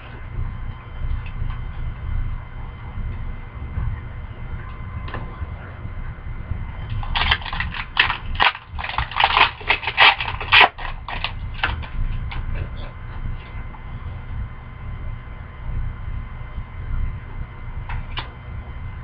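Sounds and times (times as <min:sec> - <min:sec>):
wrapper crinkling and tearing: 0:07.0 - 0:11.8.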